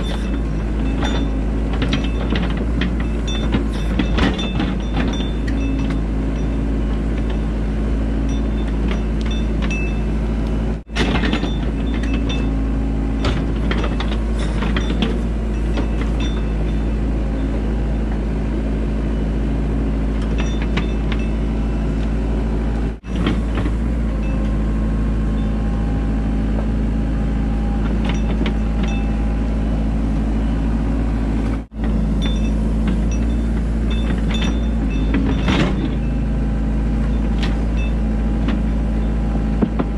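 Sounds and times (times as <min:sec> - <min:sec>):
digging scrapes and clanks: 0:00.0 - 0:10.1, 0:10.8 - 0:18.3, 0:31.5 - 0:38.9
engine running under load: 0:00.0 - 0:39.9.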